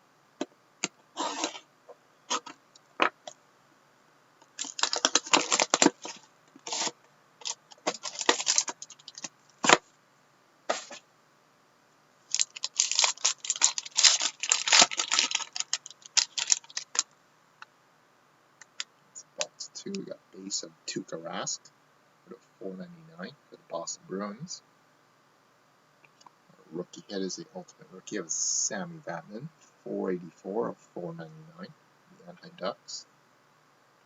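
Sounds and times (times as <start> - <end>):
wrapper tearing and crinkling: 1.2 - 1.6, 4.6 - 9.8, 12.3 - 17.1.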